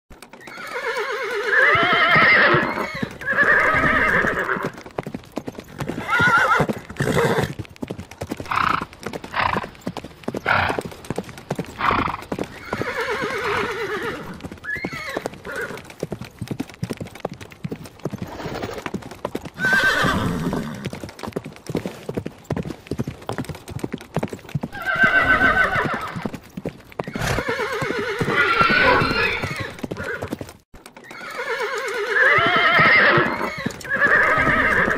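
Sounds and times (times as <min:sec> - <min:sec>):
hoofbeats clip-clopping: 0:00.1 - 0:34.9
horses whinnying: 0:00.3 - 0:07.6, 0:08.4 - 0:16.0, 0:18.1 - 0:21.0, 0:24.7 - 0:26.4, 0:27.0 - 0:34.9.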